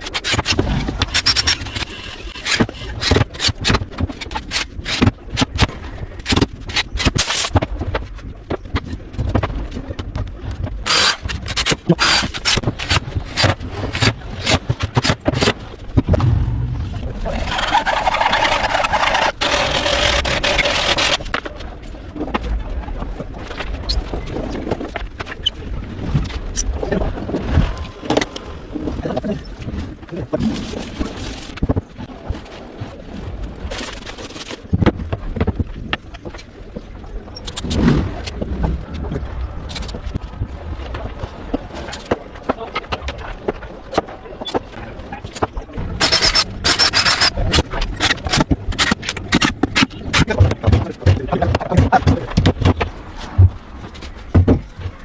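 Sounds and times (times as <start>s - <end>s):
steady low rumble: 15.6s - 18.0s
knocks and clicks: 45.3s - 53.6s.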